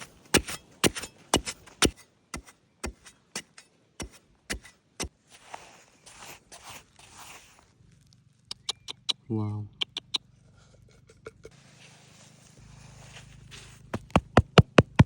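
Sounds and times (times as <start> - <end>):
rustling hiss: 11.5 - 13.9.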